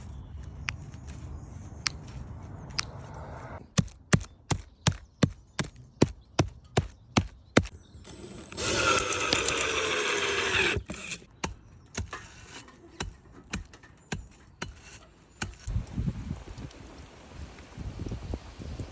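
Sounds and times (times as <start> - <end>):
tool knocking on thatch: 3.8 - 7.7
loud rasping burst: 6.4 - 11.4.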